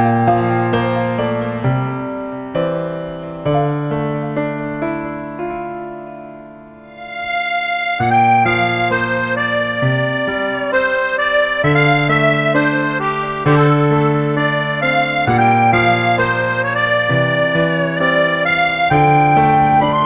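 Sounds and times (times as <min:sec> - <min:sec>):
accordion-like instrumental music: 0:00.0 - 0:02.8, 0:06.9 - 0:20.0
piano phrase: 0:00.0 - 0:20.0.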